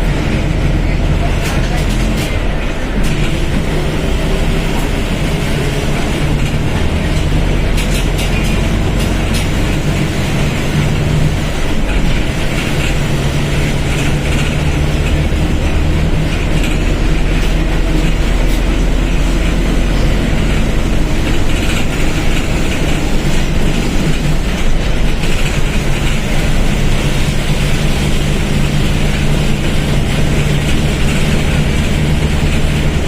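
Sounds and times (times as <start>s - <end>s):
diesel bus engine running: 0.0s - 33.0s
vehicle hiss and rattle: 0.3s - 33.0s.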